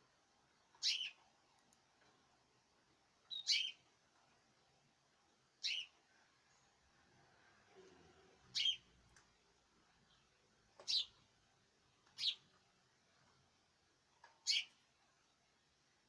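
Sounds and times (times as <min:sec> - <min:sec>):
songbird chirping: 0:00.6 - 0:01.2, 0:03.3 - 0:03.9, 0:05.6 - 0:06.0, 0:08.5 - 0:08.9, 0:10.0 - 0:11.2, 0:12.0 - 0:12.5, 0:14.4 - 0:14.8.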